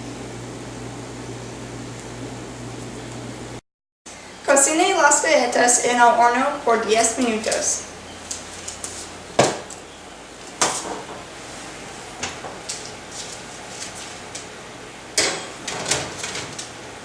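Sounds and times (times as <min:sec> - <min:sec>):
cookware knocking and clanking: 0:15.2 - 0:16.5.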